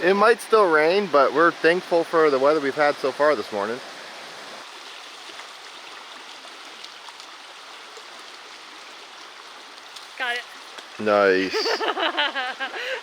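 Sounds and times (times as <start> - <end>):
river water flowing over rocks: 0.0 - 13.0.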